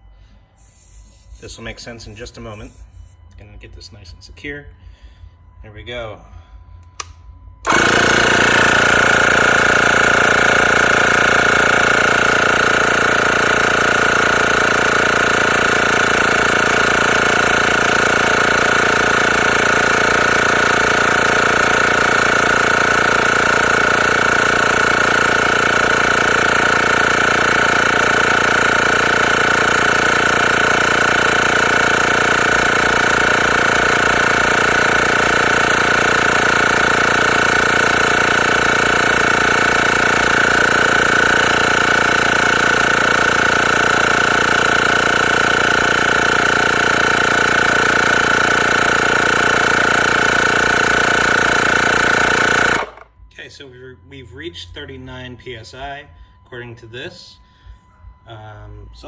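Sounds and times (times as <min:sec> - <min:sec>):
tire inflator compressor rattling: 0:00.6 - 0:03.1, 0:07.0 - 0:53.2.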